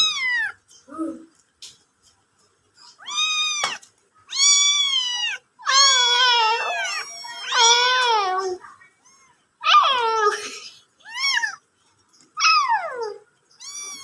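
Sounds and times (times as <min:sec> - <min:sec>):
cat meowing: 0:00.0 - 0:00.6, 0:03.0 - 0:08.4, 0:11.0 - 0:11.6, 0:12.4 - 0:14.0.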